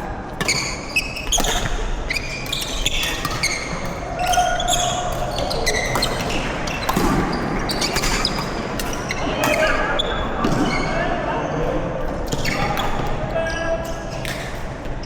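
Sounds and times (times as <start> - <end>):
rackets hitting shuttlecock: 0.4 - 9.7
shoes squeaking on court floor: 0.4 - 10.8.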